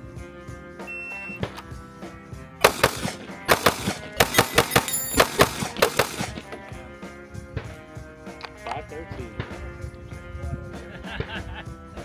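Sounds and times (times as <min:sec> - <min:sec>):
background music: 0:00.0 - 0:12.0
bullets clanging on steel: 0:02.6 - 0:06.8
rapid gunshots: 0:02.6 - 0:06.8.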